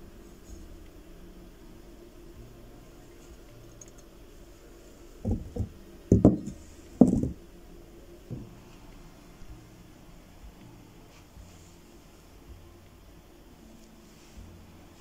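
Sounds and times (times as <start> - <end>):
dull knocks: 5.3 - 7.4.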